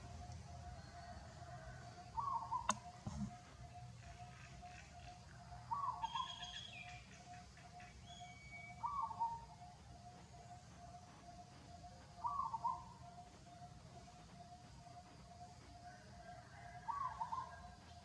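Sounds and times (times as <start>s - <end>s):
sharp click: 2.7s - 3.3s.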